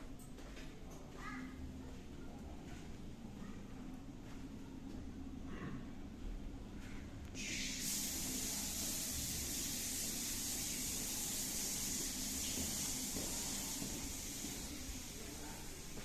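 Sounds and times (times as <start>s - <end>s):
steady high hiss: 7.4s - 16.0s.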